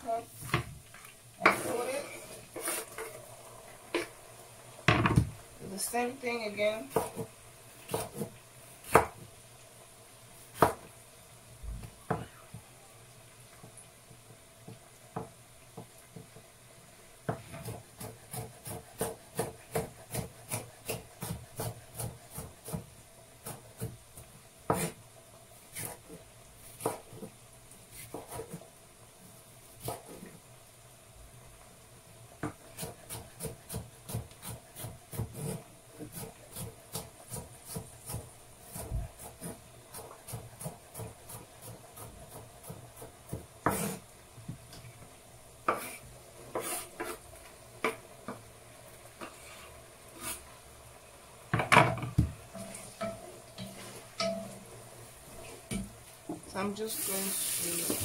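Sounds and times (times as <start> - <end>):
knife chopping on cutting board: 6.9 - 7.3, 7.9 - 9.2, 10.6 - 10.8, 17.3 - 24.0, 24.7 - 25.0, 26.8 - 27.3, 32.4 - 44.0, 45.6 - 47.2.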